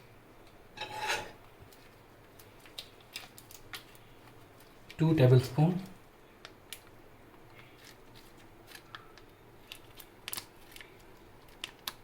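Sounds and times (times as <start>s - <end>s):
spoon scraping and tapping bowl: 0.8s - 1.4s.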